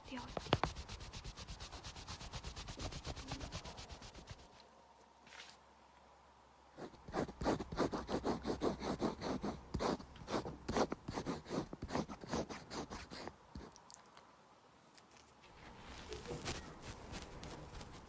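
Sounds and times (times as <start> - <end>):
eraser rubbing on paper: 0.0 - 4.6, 6.8 - 13.7, 15.9 - 18.0.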